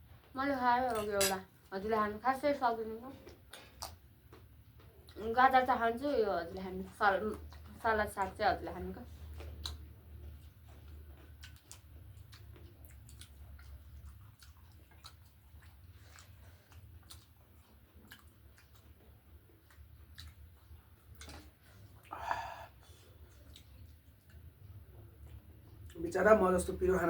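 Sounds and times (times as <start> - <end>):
chewing clicks: 3.2 - 5.3, 9.2 - 22.1, 23.1 - 26.0.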